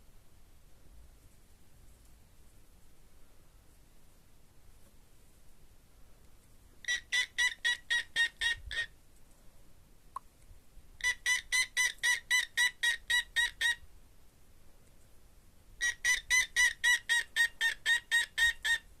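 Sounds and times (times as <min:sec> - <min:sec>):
cockatiel chirping: 0:06.8 - 0:08.9, 0:11.0 - 0:13.8, 0:15.8 - 0:18.9.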